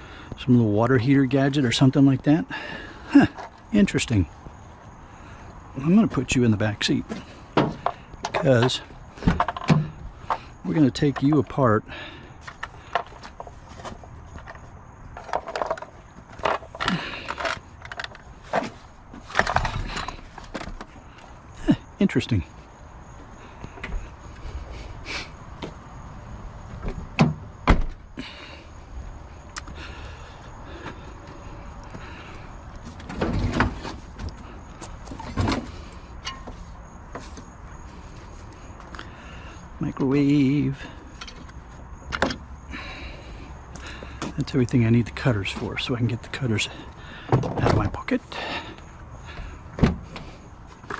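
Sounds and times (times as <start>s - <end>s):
louder clunks: 26.8s - 28.0s.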